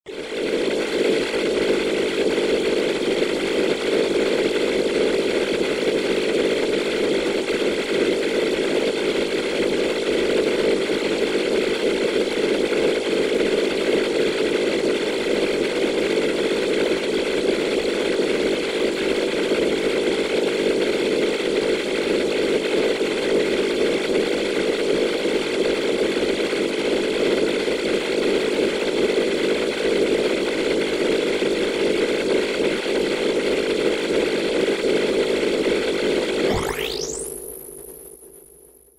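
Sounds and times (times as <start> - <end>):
mechanical sci-fi drone: 36.5 - 37.5.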